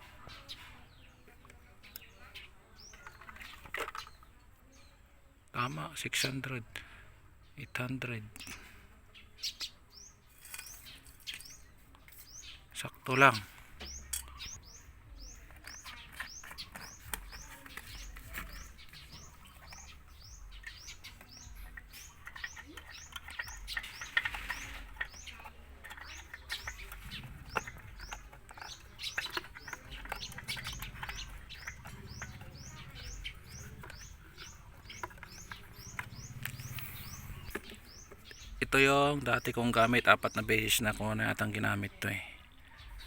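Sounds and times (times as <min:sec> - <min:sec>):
small bird chirping: 0:00.0 - 0:06.5, 0:07.4 - 0:43.0
faint clicks and knocks: 0:13.8 - 0:38.6.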